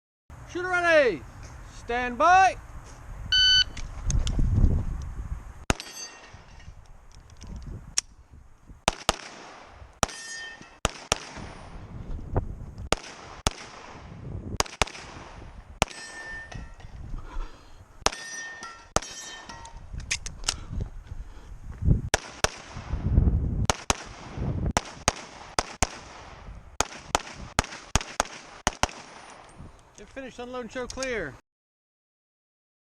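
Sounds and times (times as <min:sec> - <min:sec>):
metallic ring of steel targets: 0:05.7 - 0:06.8, 0:10.0 - 0:10.8, 0:15.8 - 0:16.9, 0:18.1 - 0:19.8
gunshots: 0:08.8 - 0:11.8, 0:12.9 - 0:16.3, 0:22.1 - 0:22.9, 0:23.7 - 0:29.4.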